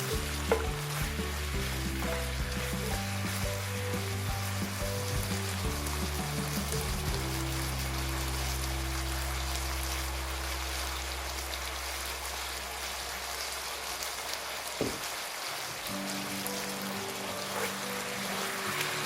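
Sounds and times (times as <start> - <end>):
background music: 0.0 - 11.8, 15.9 - 19.0
chicken sizzling in a frying pan: 0.0 - 19.0.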